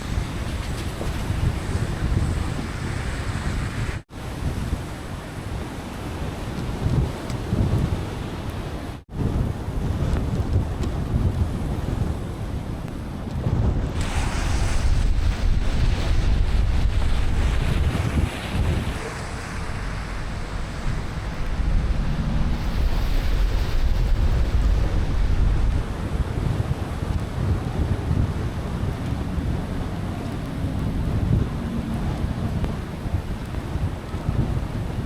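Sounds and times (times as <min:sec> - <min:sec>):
car road rumble: 0:13.9 - 0:26.4
tyre hiss on wet pavement: 0:14.0 - 0:17.9.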